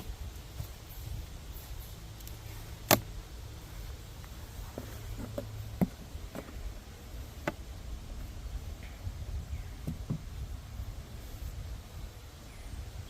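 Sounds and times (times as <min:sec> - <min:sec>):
low steady rumble: 0:00.0 - 0:13.0
wooden hive frames knocking: 0:09.8 - 0:10.4.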